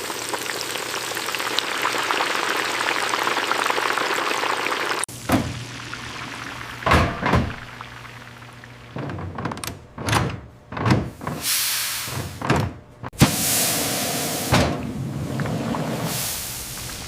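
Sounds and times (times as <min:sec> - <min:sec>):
dull thuds and knocks: 0:09.0 - 0:11.4
loud hiss bursts: 0:11.4 - 0:12.5, 0:13.2 - 0:17.0.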